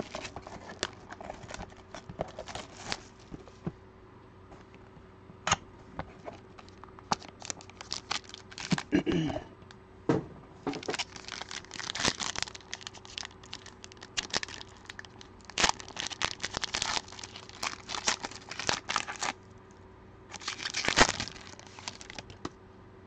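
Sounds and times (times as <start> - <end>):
plastic wrapping crinkling and tearing: 0.0 - 3.2, 6.6 - 9.0, 10.7 - 19.4, 20.3 - 22.4.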